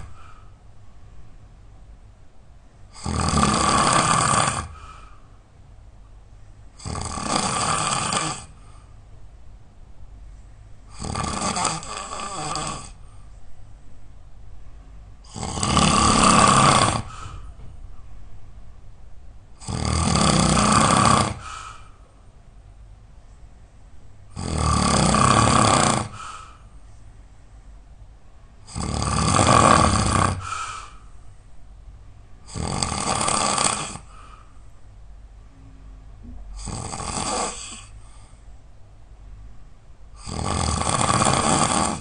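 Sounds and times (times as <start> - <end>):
person snoring loudly: 2.9 - 5.0, 6.8 - 8.6, 10.9 - 13.0, 15.2 - 17.3, 19.6 - 21.9, 24.3 - 26.6, 28.7 - 31.0, 32.4 - 34.2, 36.5 - 38.0, 40.2 - 42.0.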